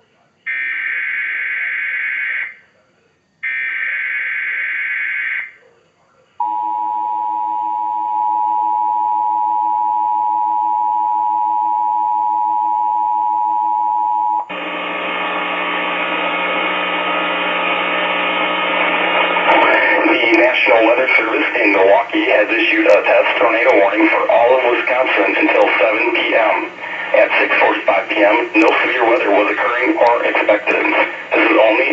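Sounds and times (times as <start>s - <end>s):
hissy humming radio noise: 14.5s - 31.9s.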